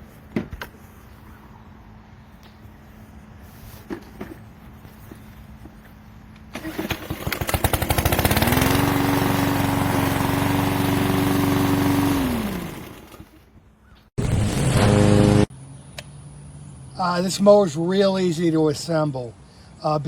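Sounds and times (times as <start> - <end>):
lawn mower engine starting: 6.4 - 13.5, 14.2 - 15.5.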